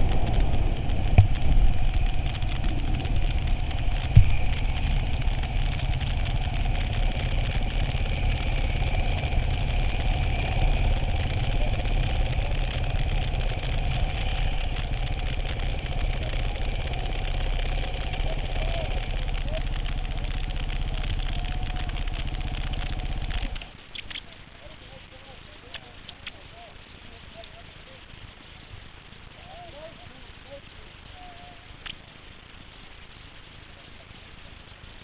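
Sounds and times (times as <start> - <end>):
vehicle engine running: 0.0 - 35.0.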